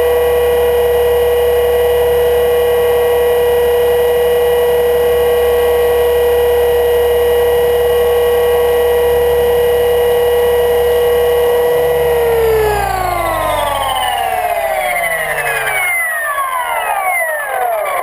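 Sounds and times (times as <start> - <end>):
rc helicopter motor whine: 6.6 - 18.0
low rumble: 11.8 - 16.4.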